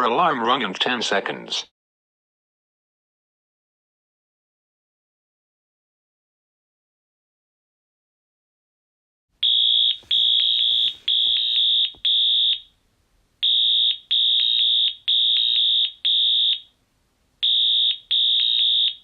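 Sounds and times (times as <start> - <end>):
fire alarm beeping: 9.4 - 12.7, 13.4 - 16.7, 17.4 - 19.0.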